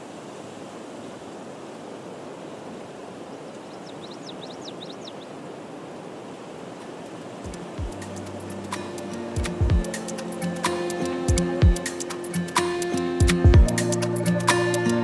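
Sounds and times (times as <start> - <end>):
rushing hiss of wind: 0.0 - 15.0
high chirps: 7.5 - 15.0.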